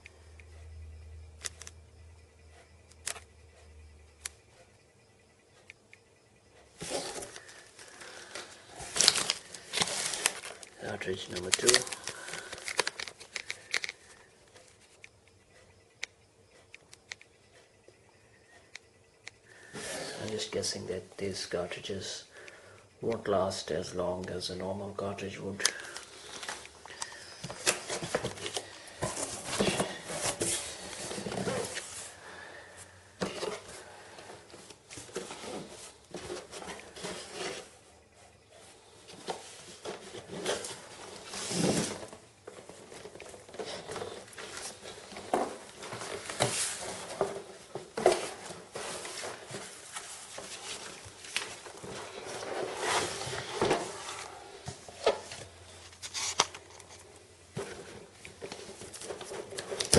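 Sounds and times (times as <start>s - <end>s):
rustling plastic and paper packing: 6.8s - 14.1s, 23.2s - 32.2s, 39.1s - 57.0s, 57.6s - 59.9s.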